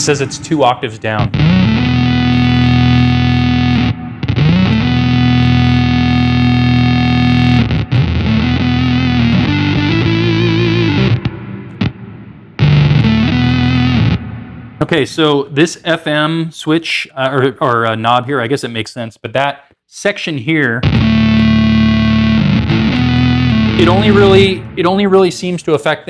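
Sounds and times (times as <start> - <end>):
fuzzy synth-like electric guitar: 0.0 - 14.8, 20.8 - 25.4.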